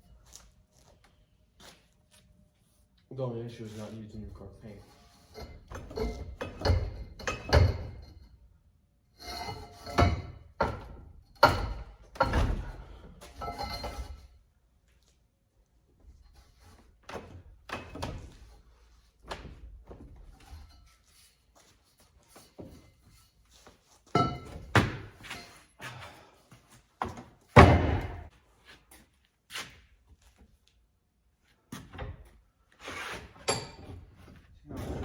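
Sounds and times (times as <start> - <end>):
knocks and thunks with ringing: 5.4 - 8.3, 9.2 - 14.2, 24.2 - 25.6, 27.1 - 28.3.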